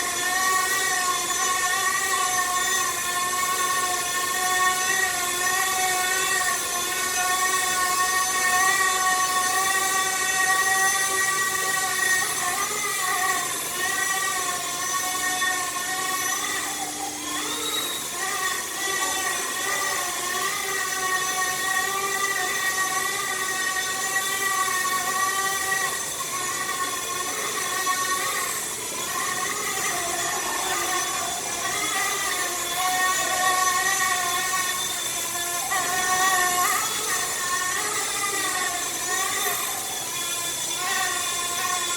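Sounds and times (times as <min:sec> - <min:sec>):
rc helicopter rotors whining: 0:00.0 - 0:41.9.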